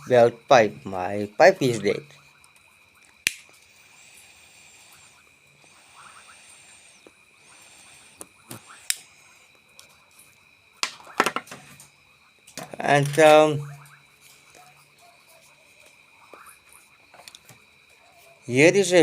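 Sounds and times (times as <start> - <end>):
lighter clicking: 3.2 - 3.5
lighter flame hissing: 3.2 - 9.9.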